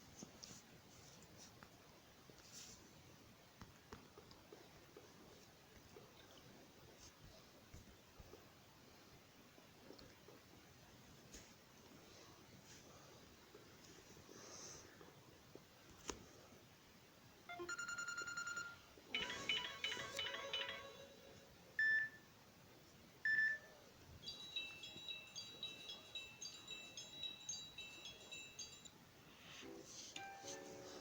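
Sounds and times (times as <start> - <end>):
quick melody of high notes: 24.2 - 28.9.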